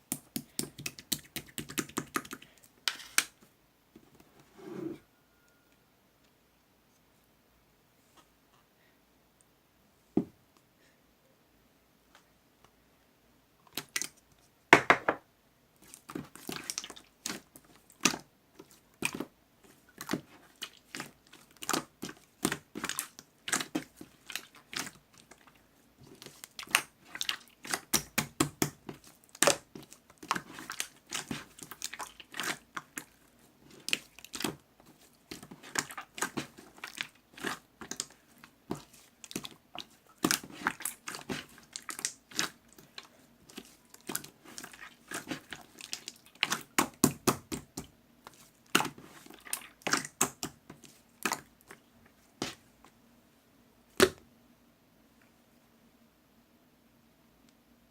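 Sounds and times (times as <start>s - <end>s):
close-up crackling and crunching: 15.8s - 52.6s.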